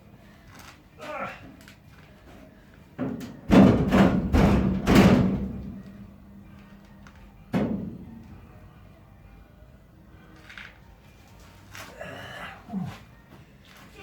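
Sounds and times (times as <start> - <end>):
heavy metal knocks ringing: 3.4 - 6.2.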